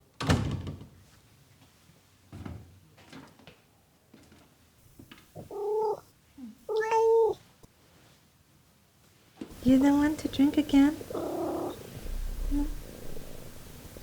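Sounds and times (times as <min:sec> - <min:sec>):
cat meowing: 0:05.4 - 0:07.4, 0:11.0 - 0:13.0.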